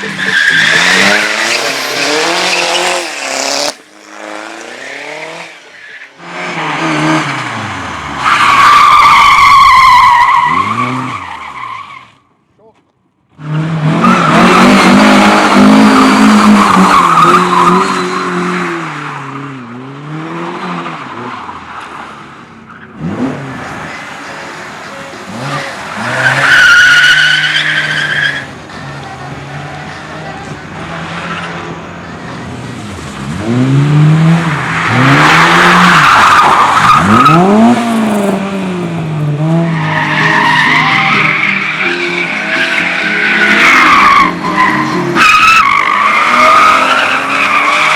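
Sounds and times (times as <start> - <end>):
tyres squealing: 0.0 - 3.4, 23.7 - 30.6, 39.8 - 47.9
car engine revving hard: 0.0 - 5.6, 13.4 - 19.0, 33.2 - 39.8.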